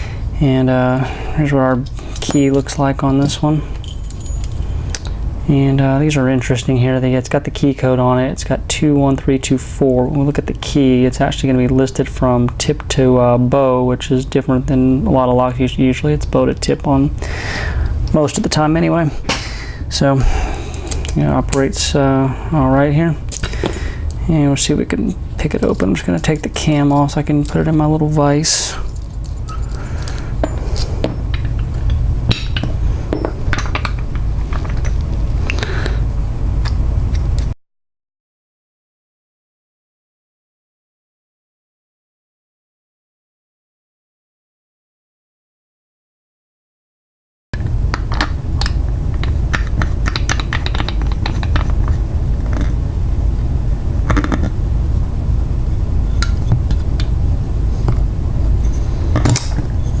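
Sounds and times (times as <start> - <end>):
steady low hum: 0.0 - 37.6, 47.6 - 60.0
metal lock clicks and clinks: 59.2 - 59.7.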